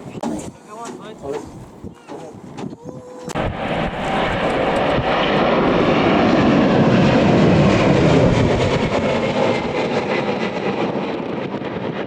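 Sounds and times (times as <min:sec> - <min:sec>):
wind buffeting microphone: 0:00.0 - 0:12.0
jet engines passing: 0:03.3 - 0:12.0.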